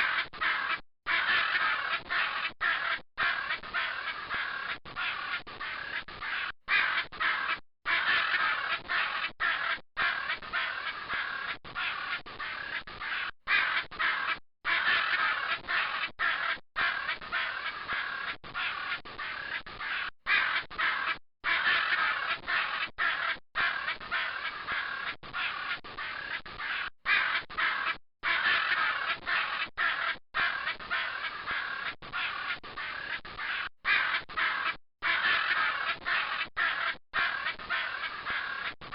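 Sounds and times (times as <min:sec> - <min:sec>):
macaws squawking: 0:00.0 - 0:38.9.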